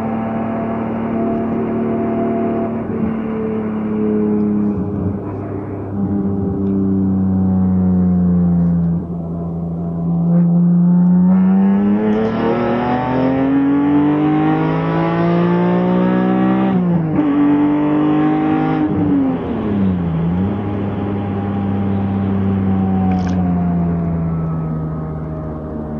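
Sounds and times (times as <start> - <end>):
car engine accelerating: 0.0 - 25.9.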